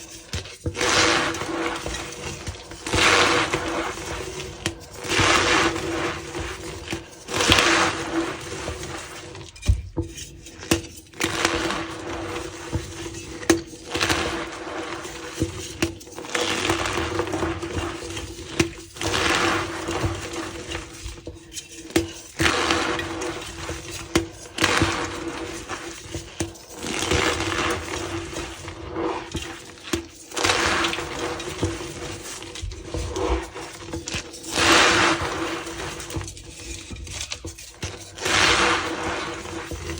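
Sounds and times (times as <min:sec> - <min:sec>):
chalk blocks crunching and crumbling: 0:00.0 - 0:09.6, 0:11.1 - 0:21.1, 0:22.0 - 0:39.9.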